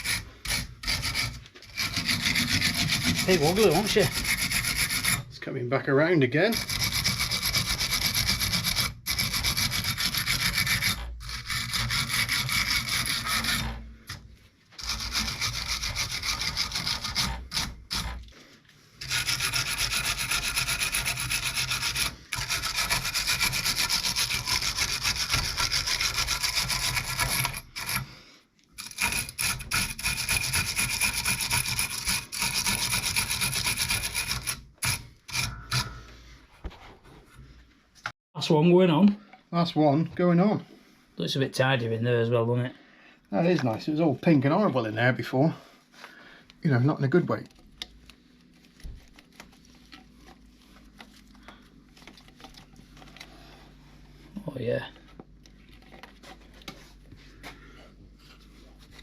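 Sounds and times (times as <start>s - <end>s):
abrasive scrubbing on metal: 0.0s - 5.4s, 6.5s - 14.2s, 14.8s - 28.2s.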